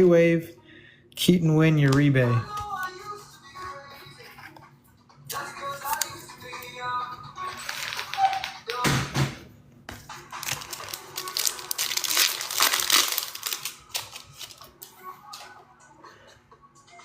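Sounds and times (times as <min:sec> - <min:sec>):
wrapper tearing and crinkling: 0:07.6 - 0:08.5, 0:10.3 - 0:14.9.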